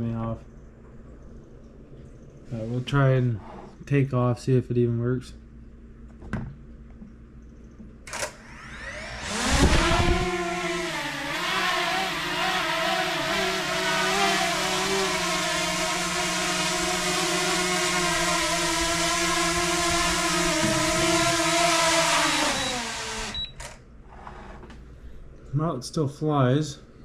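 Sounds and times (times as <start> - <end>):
drone propellers buzzing: 8.4 - 23.4.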